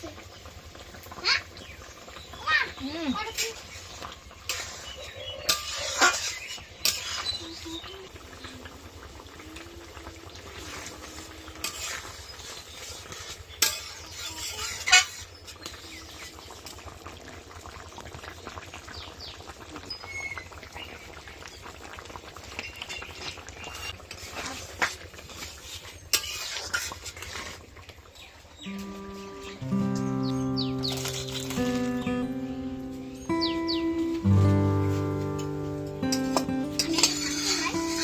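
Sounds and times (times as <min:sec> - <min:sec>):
low sizzle: 0:00.0 - 0:38.0
utensil scraping food in pan: 0:03.3 - 0:07.5, 0:10.6 - 0:15.9, 0:24.0 - 0:27.8, 0:36.8 - 0:38.0.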